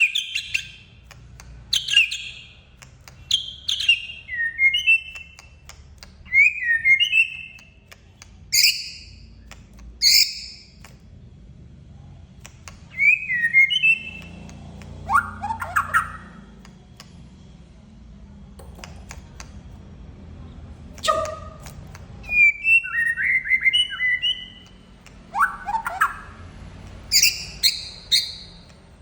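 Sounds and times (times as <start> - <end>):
bird singing whistled phrases: 3.3 - 5.5, 6.3 - 7.7, 8.5 - 9.1, 10.0 - 10.7, 12.9 - 14.4, 15.0 - 16.4, 22.2 - 24.7, 25.3 - 26.4, 27.1 - 28.7.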